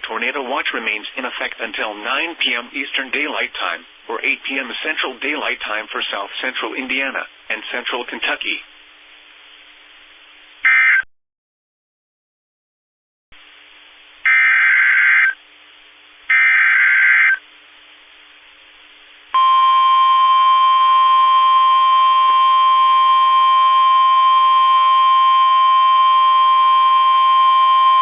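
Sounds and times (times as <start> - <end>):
steady warning alarm tone: 14.3 - 15.4, 16.3 - 17.4, 19.4 - 28.0.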